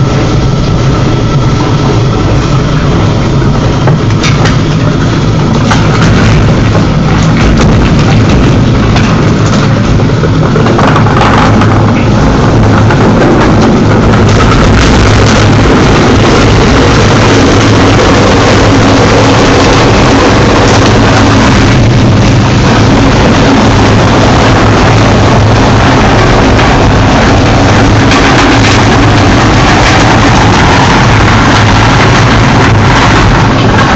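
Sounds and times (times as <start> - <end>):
grinder machine drone: 0.0 - 33.9.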